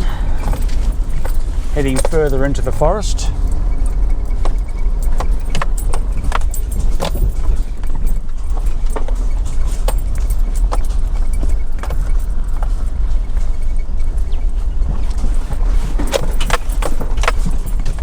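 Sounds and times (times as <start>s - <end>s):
rattles over bumps: 0.0s - 18.0s
vehicle rumbling on rough road: 0.0s - 18.0s.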